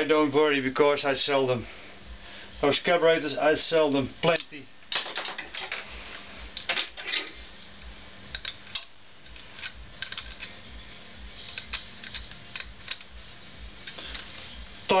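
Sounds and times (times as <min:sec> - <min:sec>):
faint steady hum: 0:00.0 - 0:15.0
metal parts clinking: 0:06.6 - 0:07.4, 0:08.3 - 0:10.6.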